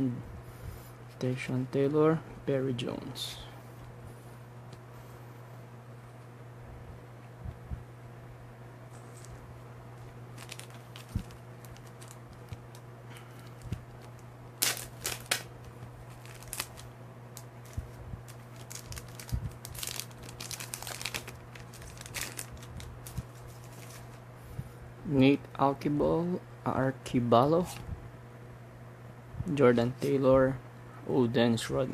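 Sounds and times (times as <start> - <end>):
steady low hum: 0.0 - 31.9
cards being handled: 8.9 - 9.4, 10.1 - 24.2
card pack wrapper crinkling: 10.3 - 24.2.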